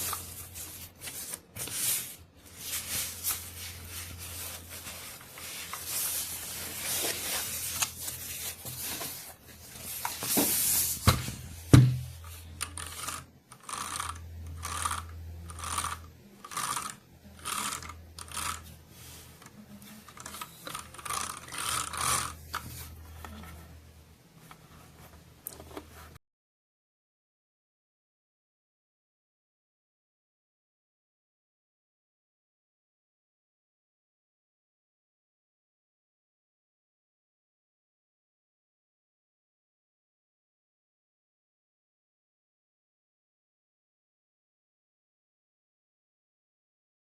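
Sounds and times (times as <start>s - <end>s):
packaging rubbing and rustling: 0.0s - 11.5s.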